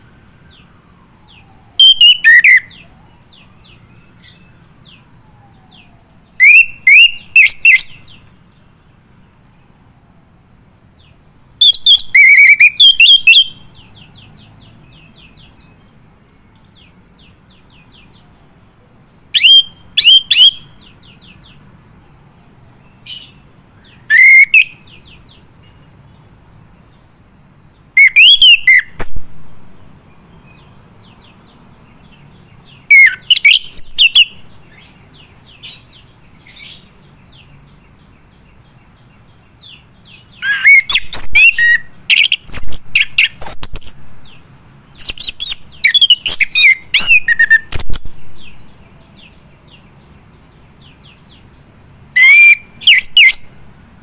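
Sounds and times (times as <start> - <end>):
thrush whistling song: 0.0 - 8.2, 11.6 - 13.9, 19.3 - 21.0, 23.2 - 25.2, 27.9 - 29.6, 32.6 - 34.4, 40.2 - 48.8, 52.2 - 53.6.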